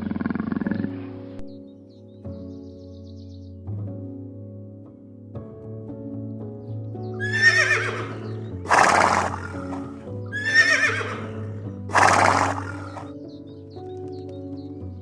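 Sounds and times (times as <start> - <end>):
background music with held tones: 0.0 - 15.0
horse whinnying: 7.2 - 13.1
horse breathy snort: 8.7 - 10.0, 11.9 - 13.1.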